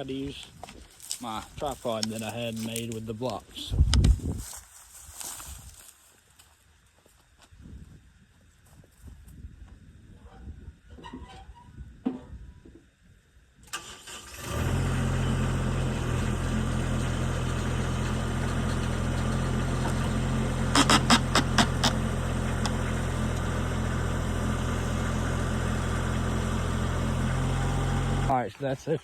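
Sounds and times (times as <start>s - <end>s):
diesel engine starting and running: 13.6s - 28.4s
sharp knocks: 20.8s - 22.0s.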